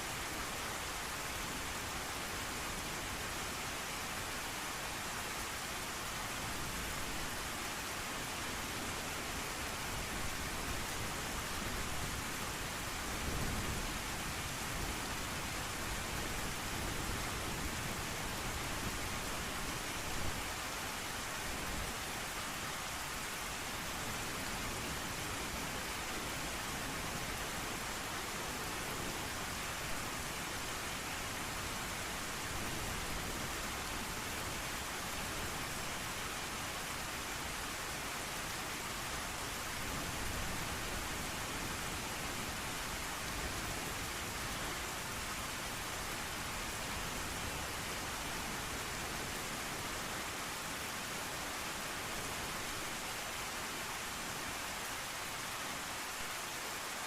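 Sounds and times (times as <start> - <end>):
heavy rain hissing: 0.0 - 57.0.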